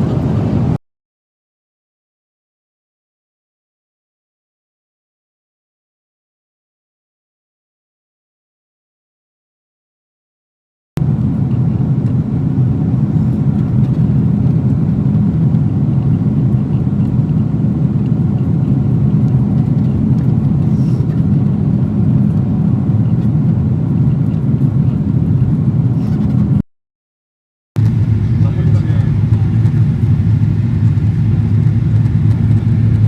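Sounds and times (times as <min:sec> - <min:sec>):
airliner cabin rumble: 0:00.0 - 0:00.8, 0:11.0 - 0:26.6, 0:27.8 - 0:33.0.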